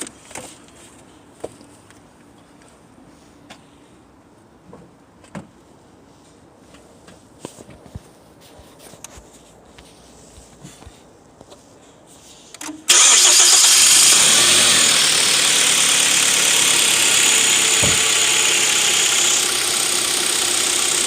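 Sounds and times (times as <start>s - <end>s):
car engine starting and idling: 12.6s - 21.0s.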